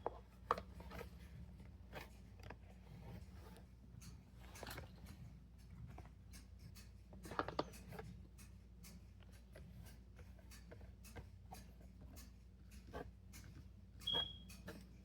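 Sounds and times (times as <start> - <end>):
fidget toys clicking and tapping: 4.0 - 15.0.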